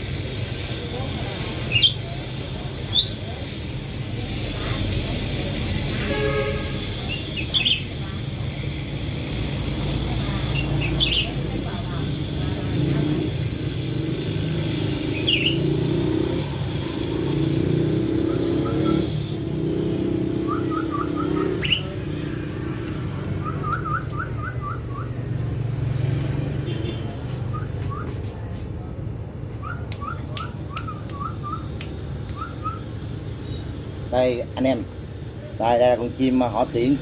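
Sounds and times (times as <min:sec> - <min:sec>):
sharp high bird chirps: 0:01.6 - 0:02.1, 0:02.9 - 0:03.3, 0:07.0 - 0:08.0, 0:10.5 - 0:11.5, 0:14.9 - 0:16.1, 0:20.2 - 0:22.1, 0:23.3 - 0:25.2, 0:29.6 - 0:33.7
bird calling in rising notes: 0:20.3 - 0:22.0.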